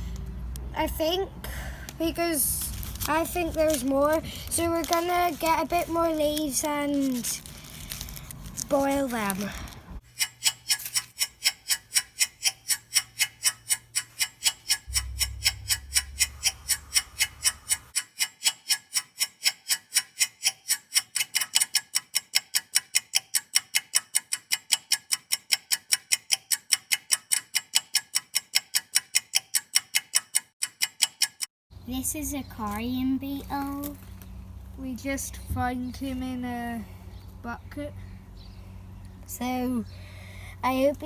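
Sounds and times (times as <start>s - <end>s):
fast mechanical ticking: 2.0s - 31.5s
low hum: 14.8s - 17.9s.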